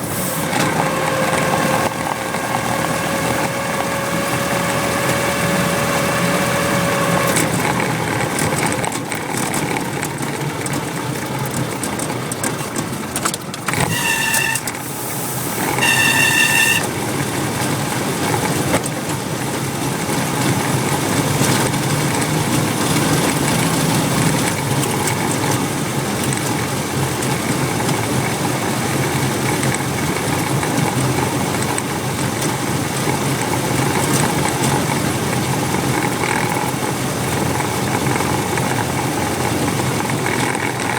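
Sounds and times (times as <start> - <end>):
clutch squealing: 0.0 - 9.0, 13.2 - 17.4
engine running steadily: 0.0 - 40.9.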